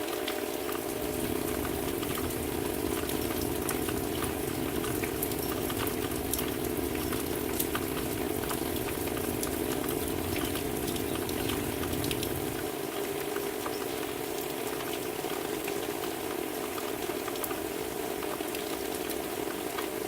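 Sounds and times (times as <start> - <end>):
steady rain: 0.0 - 20.0
sharp raindrop ticks: 0.2 - 12.7.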